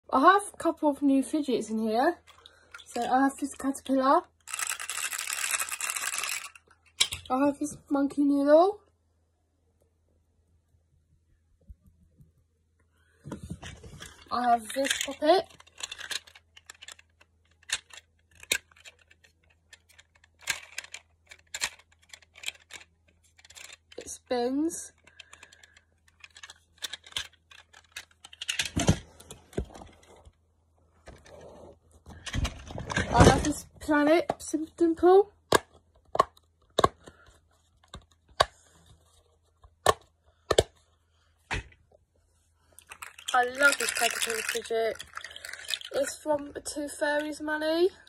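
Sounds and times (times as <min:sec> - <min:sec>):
plastic fidget toy clicks: 0:04.4 - 0:07.2, 0:42.8 - 0:46.2
plastic fidget toys clicking: 0:04.4 - 0:07.3, 0:14.1 - 0:24.2, 0:24.9 - 0:28.9, 0:42.8 - 0:46.4.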